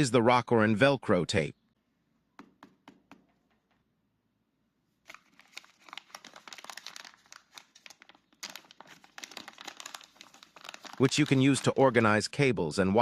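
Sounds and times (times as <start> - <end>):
hook-and-loop tape crackling: 5.1 - 11.8.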